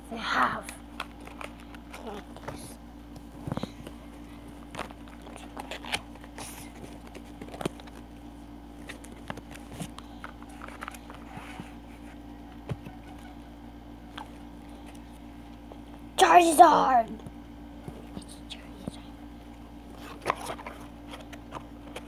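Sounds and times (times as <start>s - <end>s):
faint hum: 0.0s - 22.0s
packaging rustling: 1.0s - 2.6s, 3.4s - 13.3s, 19.9s - 22.0s.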